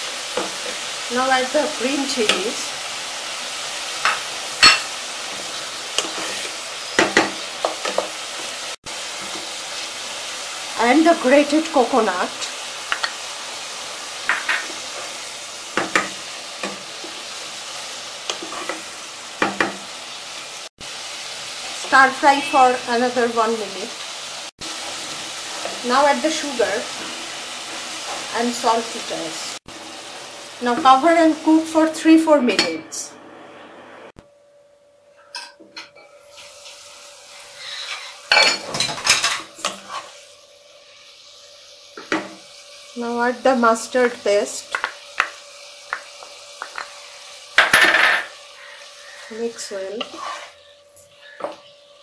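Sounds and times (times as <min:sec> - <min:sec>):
stems sizzling in hot oil: 0:00.0 - 0:33.1, 0:35.3 - 0:52.0
utensil scraping and knocking pan: 0:50.0 - 0:50.6.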